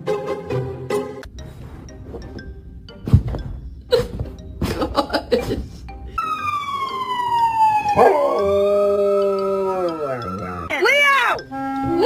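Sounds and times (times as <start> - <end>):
dog howling: 6.8 - 10.7.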